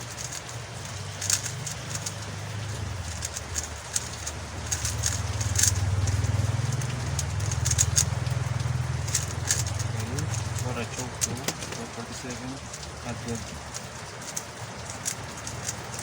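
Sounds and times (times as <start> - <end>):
puzzle cube clicking: 0.0 - 16.0
low hum: 0.8 - 12.0.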